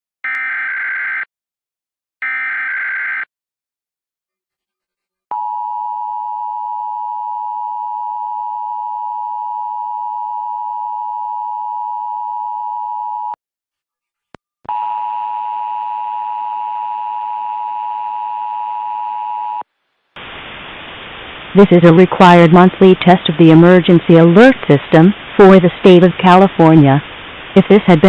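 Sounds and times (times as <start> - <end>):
two-tone alarm: 0.2 - 1.3, 2.2 - 3.3.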